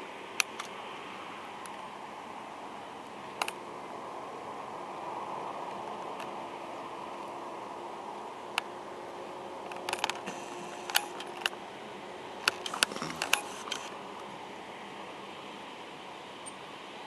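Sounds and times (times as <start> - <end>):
steady background hum: 0.0 - 17.0
sharp mechanical clicks: 9.7 - 11.6, 12.4 - 13.9.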